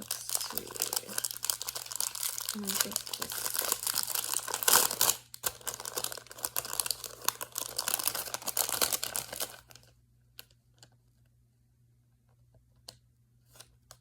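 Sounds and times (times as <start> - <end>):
crinkly packaging crackling: 0.0 - 11.0.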